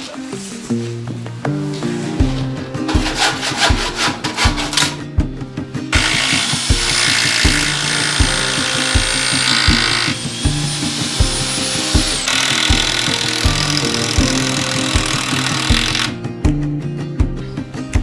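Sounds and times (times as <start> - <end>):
background music with a beat: 0.0 - 18.0
power tool whining: 6.0 - 16.2.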